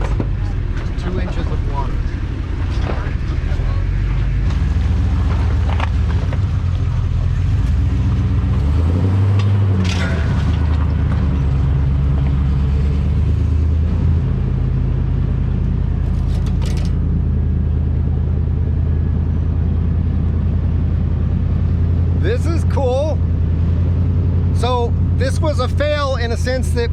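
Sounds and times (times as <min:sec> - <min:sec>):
truck clattering: 0:00.0 - 0:14.2, 0:15.5 - 0:19.1
truck engine droning: 0:00.0 - 0:26.9.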